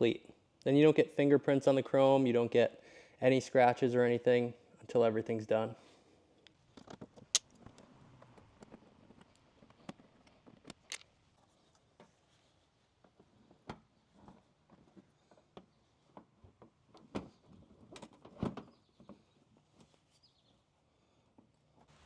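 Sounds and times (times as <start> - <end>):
clicks of parts being handled: 10.6 - 11.1.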